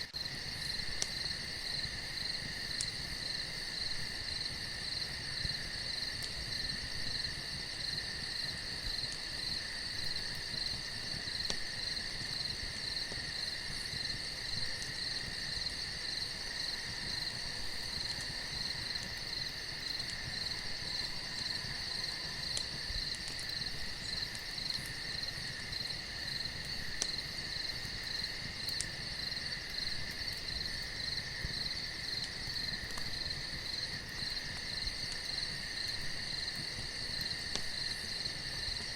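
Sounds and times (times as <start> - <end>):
crickets chirring: 0.2 - 38.9
faint sharp clicks: 37.2 - 37.7.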